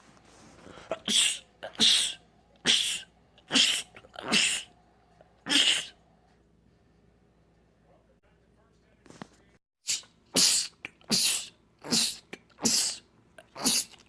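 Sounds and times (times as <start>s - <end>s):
man sneezing: 0.8s - 4.7s, 5.5s - 6.0s, 9.8s - 14.0s.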